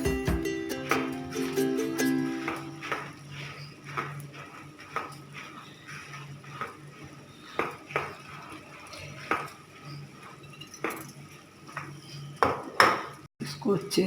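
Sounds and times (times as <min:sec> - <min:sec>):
rice being washed in water: 0:00.5 - 0:10.5.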